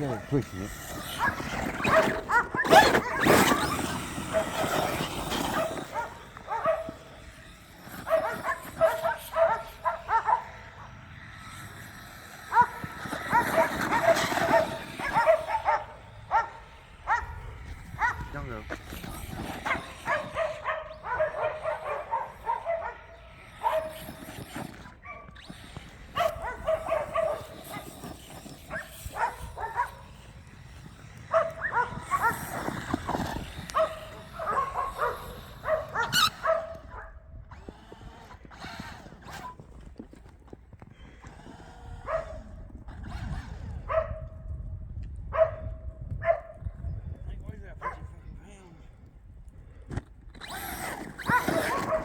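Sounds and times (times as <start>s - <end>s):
dog barking and yelping: 1.0s - 7.3s, 7.9s - 10.9s, 12.4s - 17.4s, 18.0s - 18.3s, 19.4s - 25.5s, 26.2s - 28.0s, 28.6s - 30.1s, 31.3s - 37.1s, 51.2s - 52.0s.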